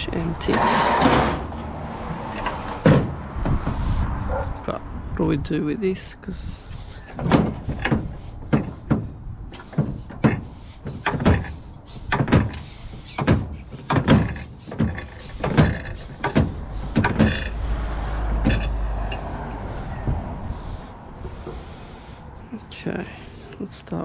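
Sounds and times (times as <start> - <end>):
metal knocks and clanks: 0.0 - 3.9, 6.9 - 20.6
steady rumbling noise: 0.0 - 24.0.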